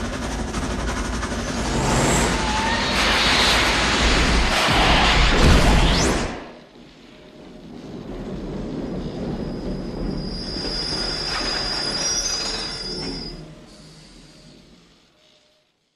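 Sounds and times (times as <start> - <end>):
train rumbling on rails: 0.0 - 14.6
metal wheel squeal: 10.1 - 14.1.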